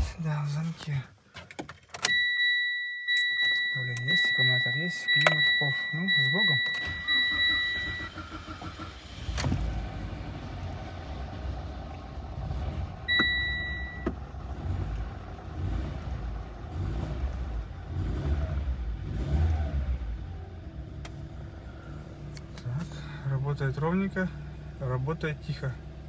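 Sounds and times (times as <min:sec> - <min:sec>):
car engine starting and idling: 0:00.0 - 0:26.0
electronic beep: 0:02.1 - 0:08.1, 0:13.1 - 0:14.1.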